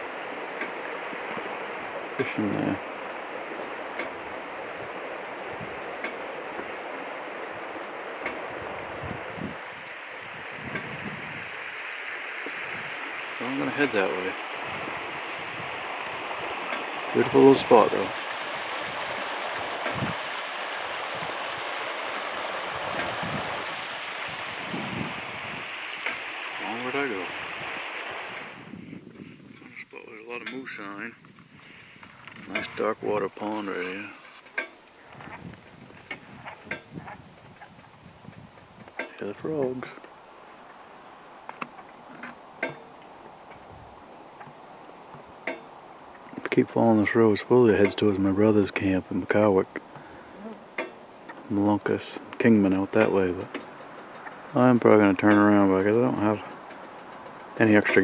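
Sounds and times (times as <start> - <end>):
stream water rushing: 0.0 - 28.8, 31.8 - 37.0, 38.0 - 58.0
frogs calling: 9.6 - 28.7, 53.2 - 54.7.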